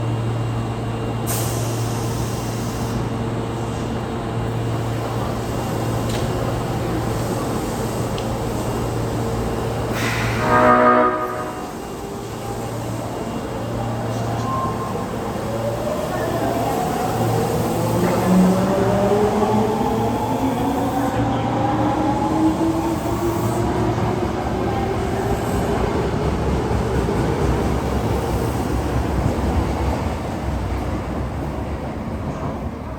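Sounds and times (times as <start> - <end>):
train electrical hum: 0.0 - 32.9
air brake hiss: 1.2 - 3.1, 9.8 - 10.7.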